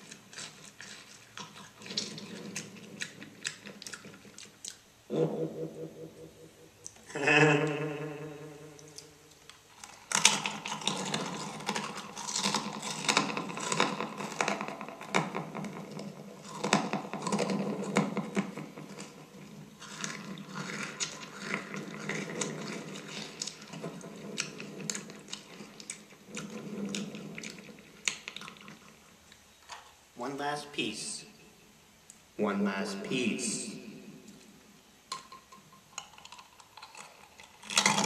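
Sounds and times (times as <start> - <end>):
amplified crunching of cookies: 0.0 - 5.1, 8.8 - 30.0, 36.0 - 38.0.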